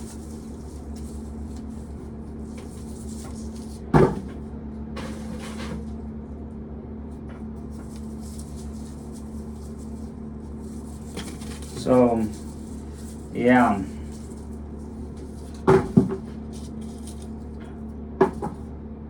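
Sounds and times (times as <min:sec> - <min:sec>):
corn sheller humming: 0:00.0 - 0:06.4, 0:07.1 - 0:18.6
corn rattling: 0:07.8 - 0:17.4.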